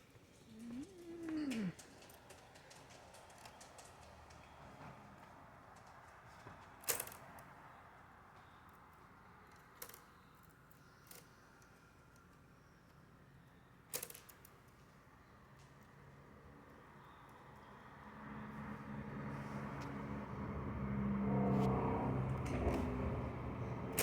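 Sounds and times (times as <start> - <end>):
faint room noise: 0.0 - 3.9.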